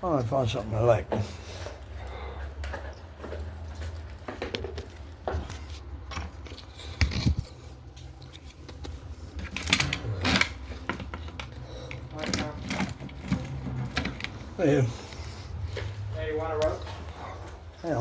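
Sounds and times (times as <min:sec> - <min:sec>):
object being handled: 0:03.9 - 0:16.0.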